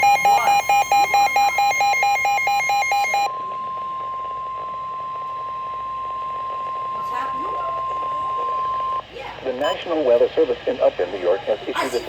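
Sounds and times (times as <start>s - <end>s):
rapid electronic alert beeping: 0.0s - 9.0s.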